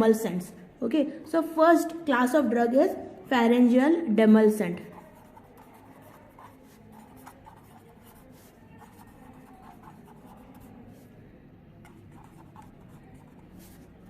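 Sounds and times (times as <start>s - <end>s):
pen scratching on paper: 4.8s - 14.0s.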